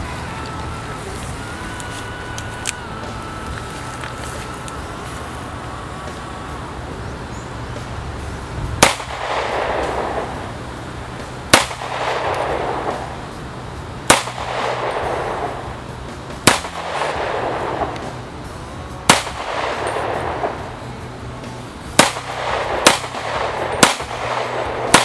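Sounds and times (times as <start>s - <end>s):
pistol shots with echo: 8.8s - 10.6s, 11.5s - 13.2s, 14.0s - 15.7s, 16.4s - 18.2s, 19.0s - 20.7s, 21.9s - 25.0s.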